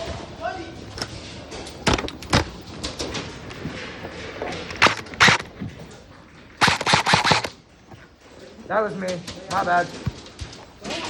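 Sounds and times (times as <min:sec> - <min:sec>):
airsoft gun shots: 0:04.8 - 0:05.5, 0:06.6 - 0:07.6.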